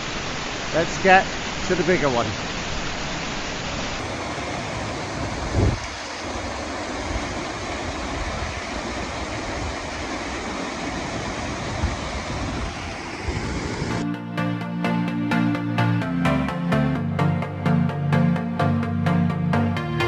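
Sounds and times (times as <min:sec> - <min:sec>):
mountain stream and waterfall rushing: 0:00.0 - 0:14.0
wind rumbling on microphone: 0:03.8 - 0:14.0.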